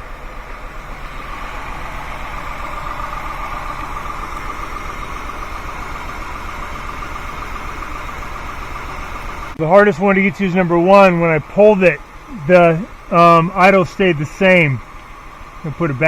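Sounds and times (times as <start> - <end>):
car engine idling with misfire: 0.0 - 16.0.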